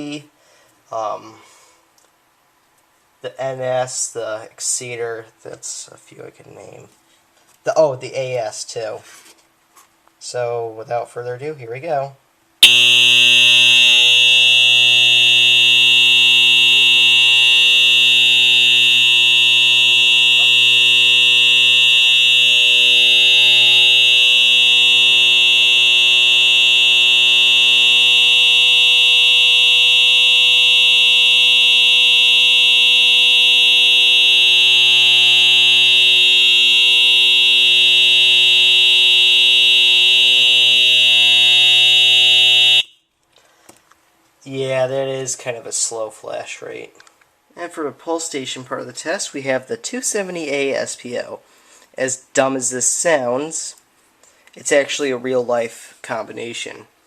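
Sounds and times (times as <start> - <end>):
fire alarm horn buzzing: 12.6 - 43.0.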